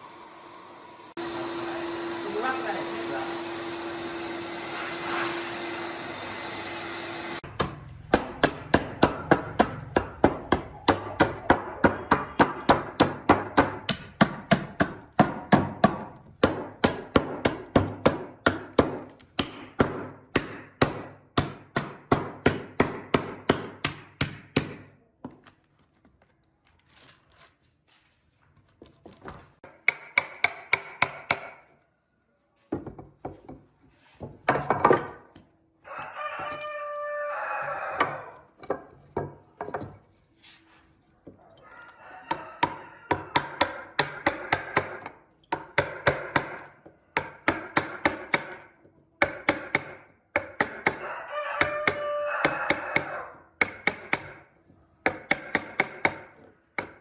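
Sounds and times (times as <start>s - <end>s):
power tool running: 0.0s - 7.4s
faint knocks and scrapes: 32.6s - 35.5s, 38.6s - 41.7s.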